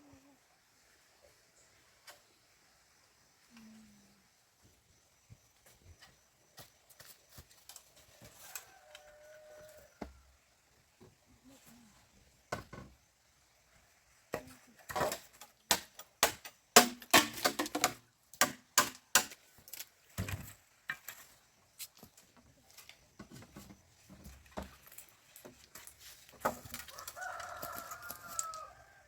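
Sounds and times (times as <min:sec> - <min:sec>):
sharp knocks and clatter: 0:14.9 - 0:19.3.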